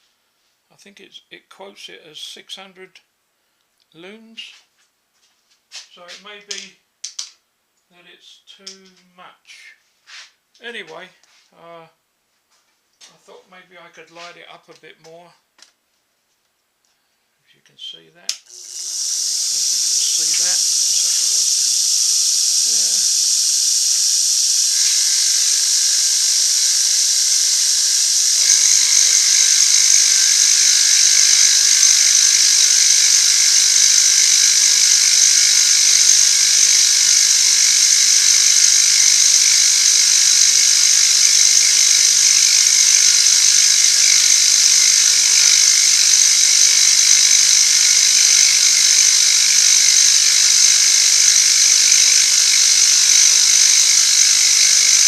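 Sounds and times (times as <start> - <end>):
machine tool cutting metal: 18.5 - 55.0.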